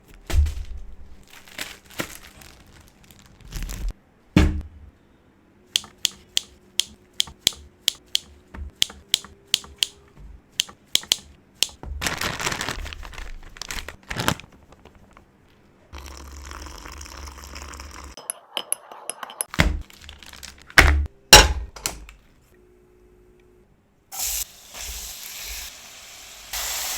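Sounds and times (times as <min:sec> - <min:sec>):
crinkling: 0:00.0 - 0:04.0, 0:11.8 - 0:15.7, 0:19.8 - 0:20.8
sharp evenly spaced taps: 0:05.8 - 0:11.8.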